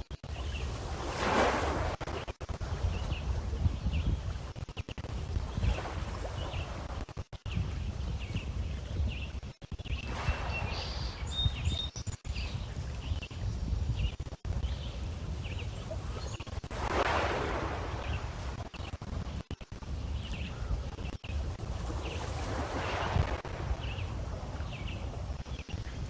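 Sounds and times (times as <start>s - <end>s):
wind rumbling on microphone: 0.0s - 26.0s
birds chirping: 7.5s - 16.6s, 17.8s - 26.0s.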